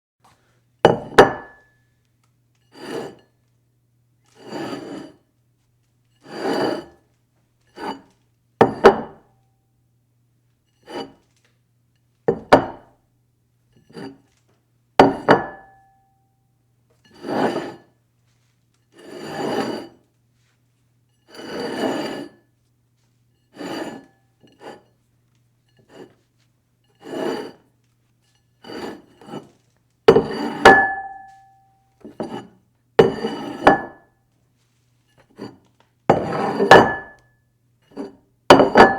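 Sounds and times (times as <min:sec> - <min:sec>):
dish scraping across a table: 0:02.7 - 0:03.3, 0:04.3 - 0:05.2, 0:06.2 - 0:07.0, 0:07.7 - 0:09.2, 0:10.8 - 0:11.2, 0:13.8 - 0:14.3, 0:17.1 - 0:17.9, 0:19.0 - 0:20.5, 0:21.3 - 0:22.4, 0:23.5 - 0:25.0, 0:25.7 - 0:26.3, 0:26.9 - 0:27.7, 0:28.5 - 0:34.0, 0:35.2 - 0:37.2, 0:37.9 - 0:38.9.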